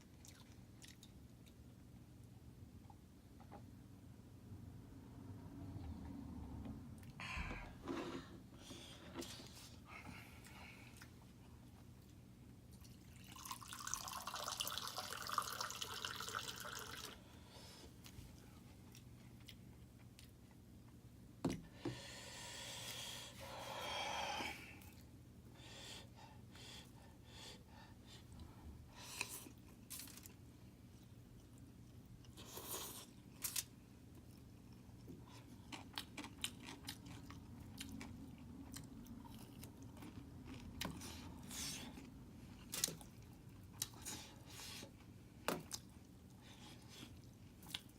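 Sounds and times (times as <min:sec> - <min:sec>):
crunchy chewing: 0:31.0 - 0:44.1.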